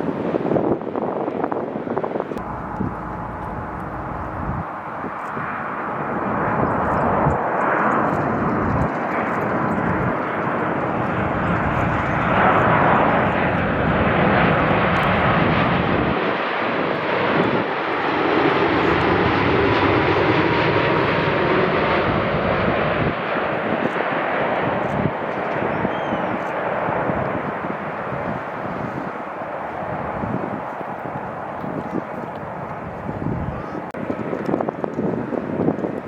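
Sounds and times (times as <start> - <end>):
jet airliner passing: 0.0 - 36.0.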